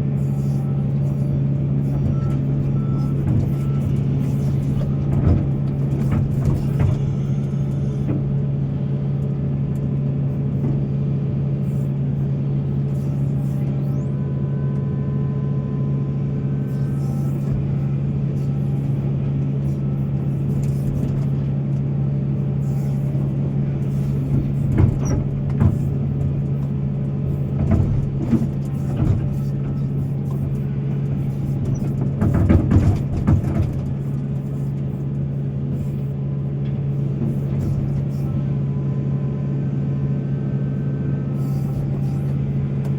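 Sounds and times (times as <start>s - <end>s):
excavator diesel engine droning: 0.0s - 42.9s
sharp metal knocks and clatters: 23.2s - 34.6s.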